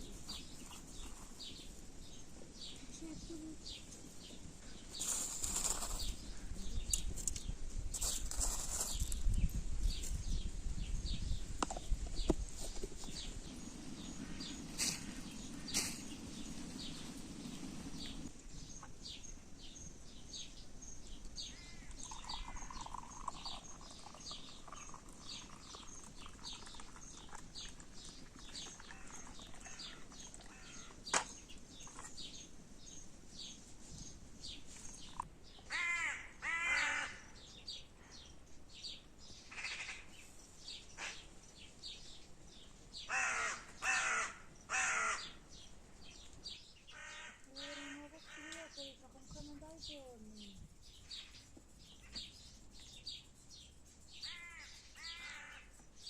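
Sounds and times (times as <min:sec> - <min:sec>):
high rapid bird chirps: 0:04.9 - 0:07.2, 0:21.5 - 0:30.9
harsh crow-like calls: 0:28.8 - 0:31.2, 0:35.6 - 0:37.4, 0:43.1 - 0:45.4, 0:46.9 - 0:48.6, 0:54.2 - 0:55.7.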